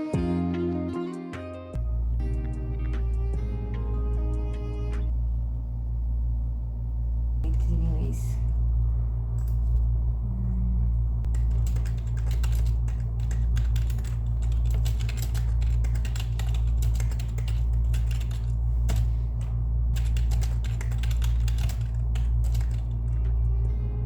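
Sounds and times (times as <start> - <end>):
low hum: 1.8 - 24.0
keyboard typing: 11.3 - 23.2.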